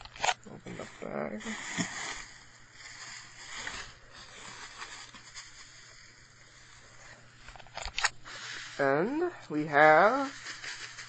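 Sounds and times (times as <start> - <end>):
packaging rustling and crinkling: 0.0 - 6.0
small crackles: 0.0 - 8.8
low steady hum: 0.0 - 11.0.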